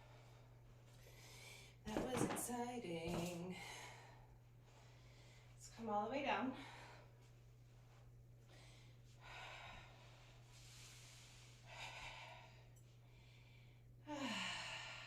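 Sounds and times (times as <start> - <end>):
woman exhaling: 14.1 - 15.0.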